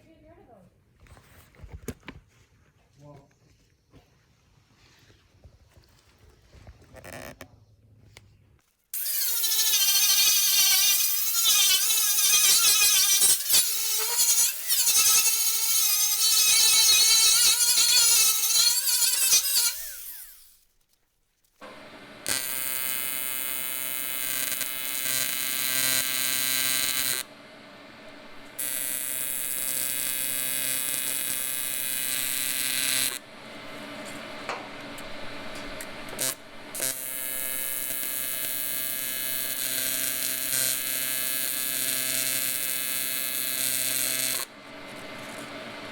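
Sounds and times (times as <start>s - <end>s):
welding arc buzzing: 9.0s - 20.6s, 21.7s - 45.5s.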